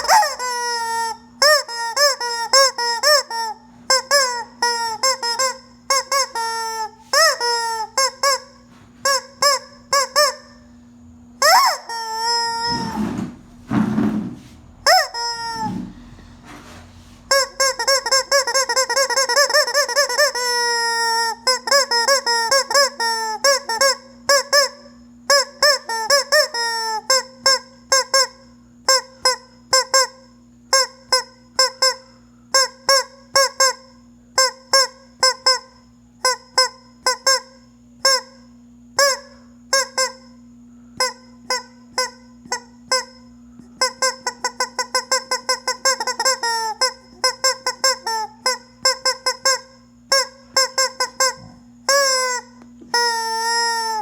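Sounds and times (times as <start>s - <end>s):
rubber chicken toy squealing: 0.0s - 10.6s, 11.4s - 14.2s, 14.8s - 16.0s, 17.3s - 28.3s, 41.0s - 54.0s
faint low hum: 0.0s - 54.0s.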